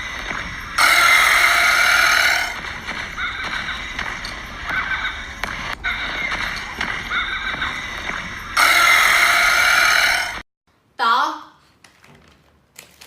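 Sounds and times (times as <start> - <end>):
animal high cries: 0.8 - 2.5, 8.6 - 10.4.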